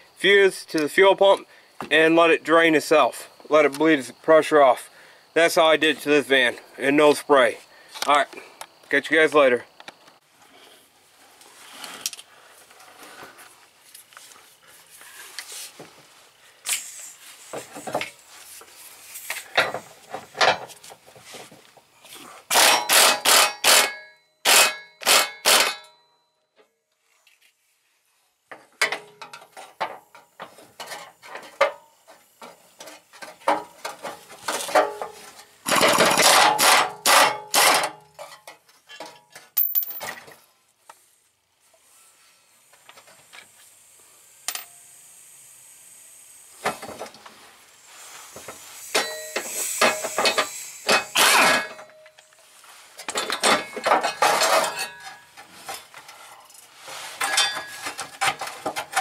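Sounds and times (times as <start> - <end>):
tools clanking on metal: 28.8 - 40.4, 48.9 - 52.2, 53.0 - 56.6, 57.2 - 59.0.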